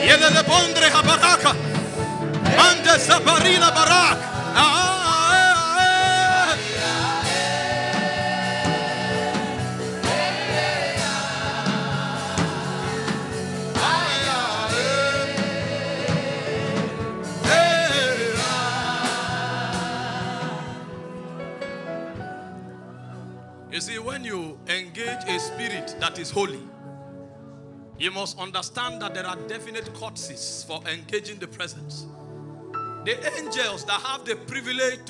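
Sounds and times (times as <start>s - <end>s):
gospel worship singing: 0.0s - 22.2s
backing music: 0.0s - 35.0s.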